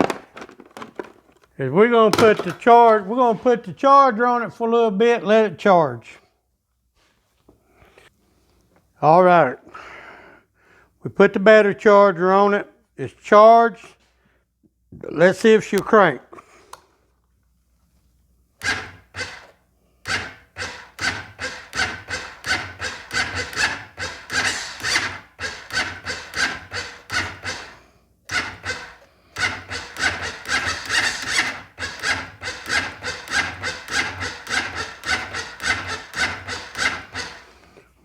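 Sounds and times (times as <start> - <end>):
electric starter cranking engine: 18.6 - 37.8.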